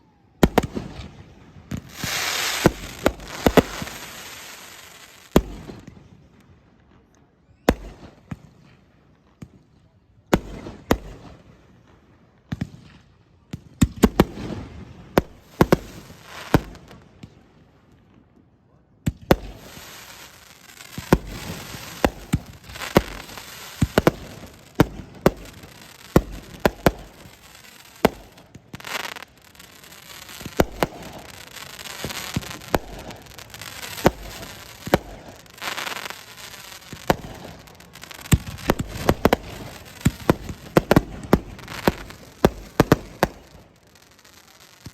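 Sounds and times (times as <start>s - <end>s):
fireworks bangs: 0.4s - 6.0s, 19.1s - 44.9s
crackling hiss: 1.7s - 5.7s, 19.3s - 44.9s.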